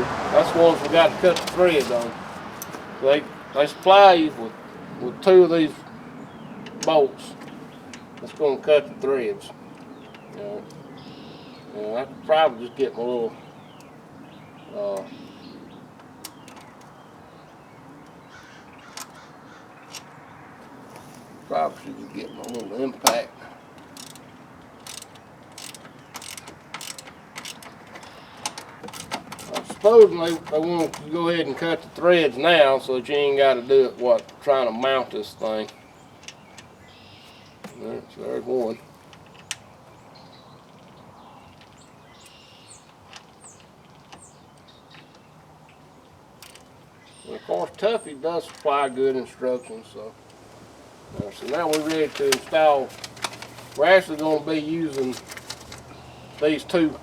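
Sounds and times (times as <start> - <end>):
distant crows calling: 0.0 - 57.0
light clicks of tools: 23.8 - 31.1.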